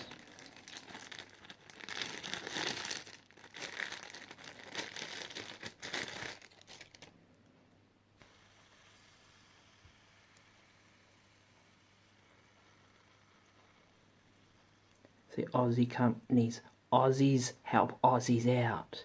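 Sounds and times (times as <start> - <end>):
packaging crinkling: 0.0 - 7.2.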